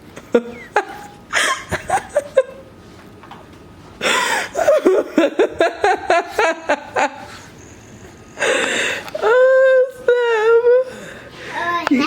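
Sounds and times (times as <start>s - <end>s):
person laughing: 0.2s - 2.7s, 4.0s - 7.6s, 8.4s - 11.0s.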